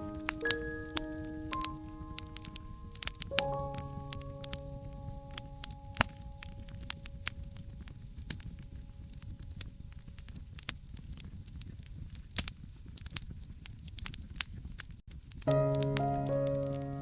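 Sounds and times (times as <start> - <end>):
music with sustained notes: 0.0 - 7.9, 15.5 - 17.0
fireplace fire crackling: 0.0 - 17.0.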